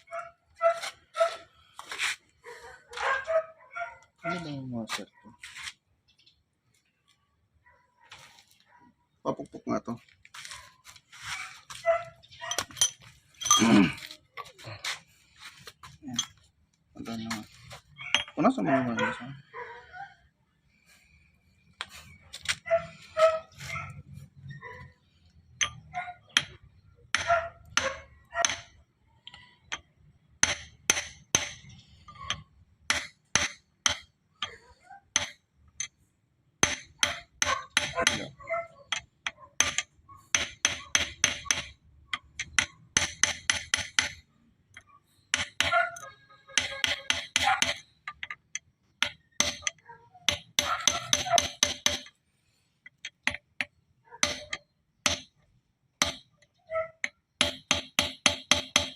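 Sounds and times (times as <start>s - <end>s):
hammer tapping on steel: 30.4s - 34.6s, 36.6s - 38.3s, 38.9s - 44.2s, 46.6s - 52.2s, 52.9s - 55.4s, 57.0s - 58.9s.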